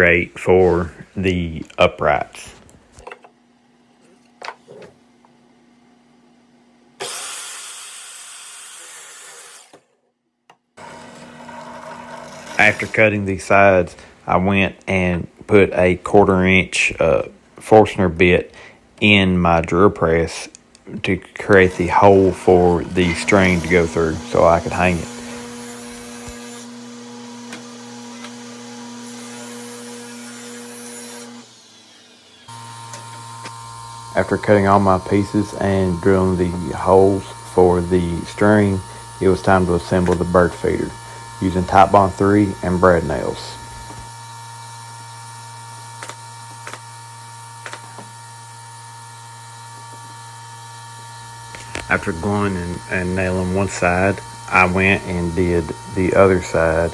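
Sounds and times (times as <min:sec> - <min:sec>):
drill press humming: 0:10.8 - 0:13.0, 0:21.5 - 0:56.9
steady hum: 0:32.5 - 0:44.1
nail gun snaps: 0:46.0 - 0:46.9, 0:47.6 - 0:48.1.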